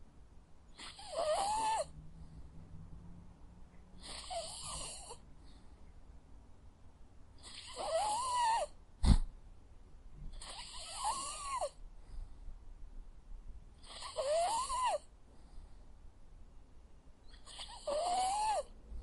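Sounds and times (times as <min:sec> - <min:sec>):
dog snoring: 0:00.8 - 0:01.9, 0:04.0 - 0:05.2, 0:07.4 - 0:09.2, 0:10.3 - 0:11.8, 0:13.8 - 0:15.0, 0:17.3 - 0:18.7.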